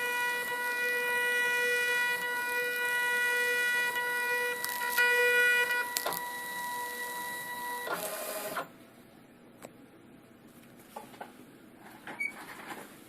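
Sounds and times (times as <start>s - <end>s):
label printer motor whine: 0.0s - 8.8s.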